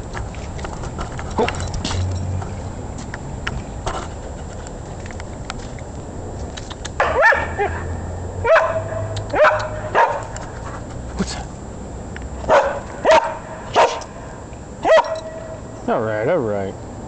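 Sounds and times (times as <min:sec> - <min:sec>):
dog barking: 0:07.0 - 0:10.4, 0:12.5 - 0:14.1, 0:14.8 - 0:15.4.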